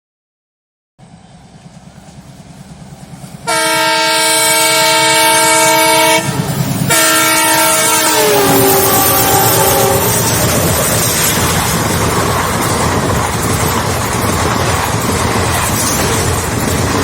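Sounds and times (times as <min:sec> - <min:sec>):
locomotive engine rumble: 0:01.0 - 0:17.0
locomotive horn blast: 0:03.4 - 0:10.5.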